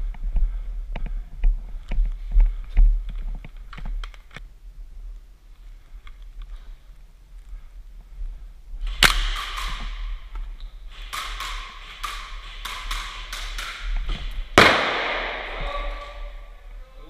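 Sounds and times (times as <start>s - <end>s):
airsoft guns firing: 8.9s - 10.3s, 10.9s - 16.3s.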